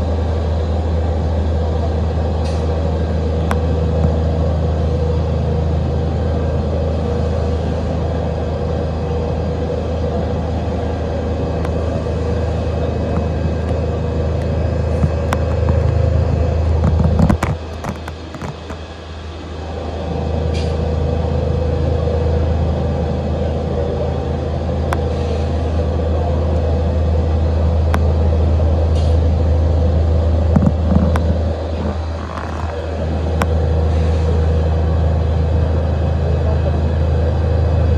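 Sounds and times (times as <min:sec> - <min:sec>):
lathe machine hum and whine: 0:00.0 - 0:37.9
scattered clicks: 0:14.4 - 0:18.8.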